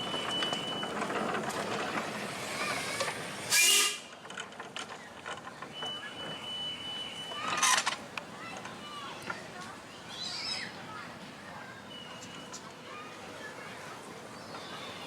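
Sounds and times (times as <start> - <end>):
steam locomotive whistle: 3.5 - 4.1.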